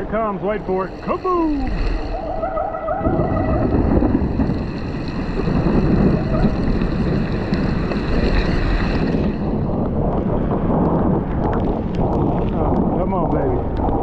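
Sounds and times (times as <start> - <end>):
wind buffeting microphone: 0.0 - 14.0
wet road spray: 3.0 - 9.6
heavy rain: 3.0 - 9.7.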